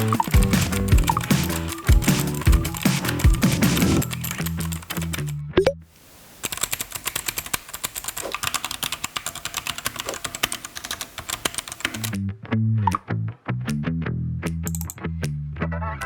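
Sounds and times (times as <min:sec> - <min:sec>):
typing on mechanical keyboard: 0:00.0 - 0:05.3, 0:06.4 - 0:12.2
background music: 0:00.0 - 0:05.8.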